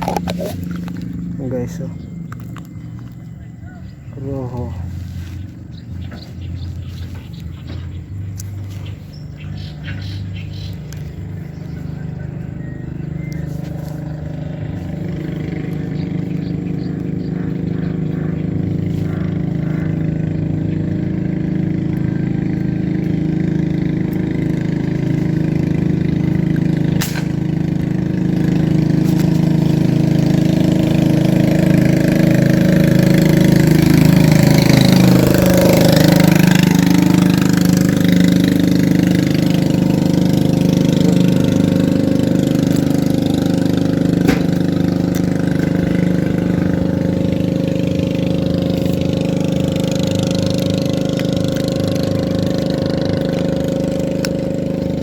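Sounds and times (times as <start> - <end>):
motor engine running: 0.0 - 55.0.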